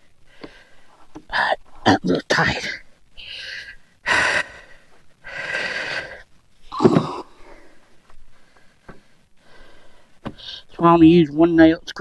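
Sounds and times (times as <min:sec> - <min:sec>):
man breathing heavily: 0:00.0 - 0:01.4, 0:03.2 - 0:06.3, 0:07.0 - 0:10.7.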